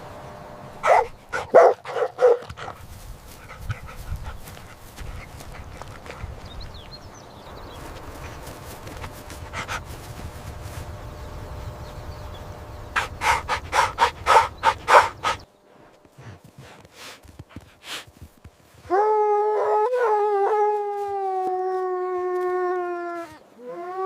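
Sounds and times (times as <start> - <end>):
quick breathy puffs: 2.5 - 6.4, 8.1 - 10.6, 13.0 - 18.4
dog howling: 18.9 - 24.0.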